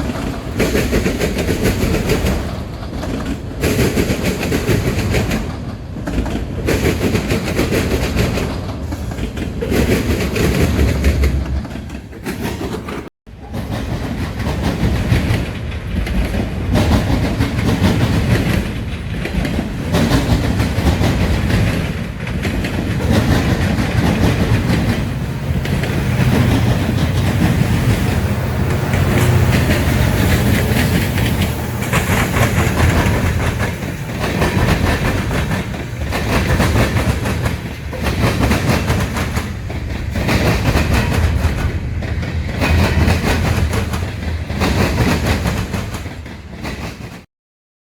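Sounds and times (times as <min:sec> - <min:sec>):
freight train rumble: 0:00.0 - 0:47.3
wheels clacking over rails: 0:00.0 - 0:47.3.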